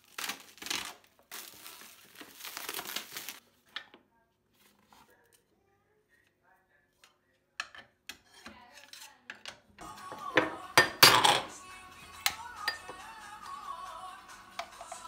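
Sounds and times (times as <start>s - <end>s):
background music: 9.8s - 15.0s
dishes and cutlery clattering: 10.4s - 11.6s.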